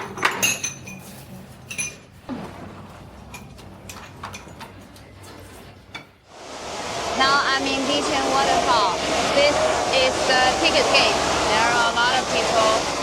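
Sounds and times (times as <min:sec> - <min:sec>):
dishes and cutlery clinking: 0:00.0 - 0:02.2, 0:03.3 - 0:06.2.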